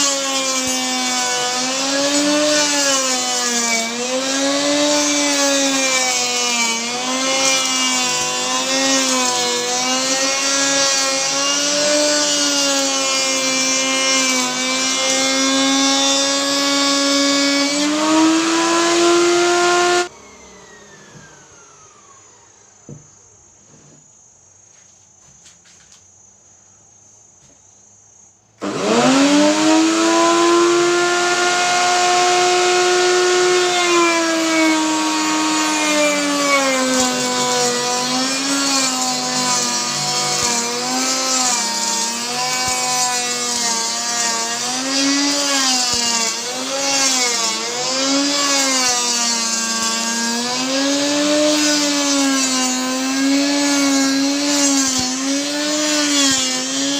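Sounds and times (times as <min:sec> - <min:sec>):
wood router whining: 0:00.0 - 0:24.0, 0:28.6 - 0:56.9.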